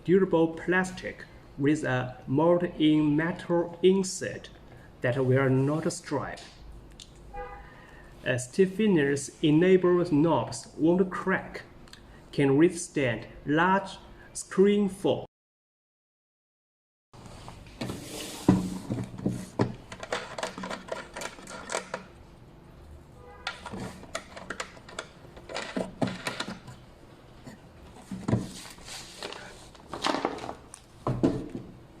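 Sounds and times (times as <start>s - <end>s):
plastic knobs clicking and knocking: 19.0s - 22.1s, 23.5s - 26.8s.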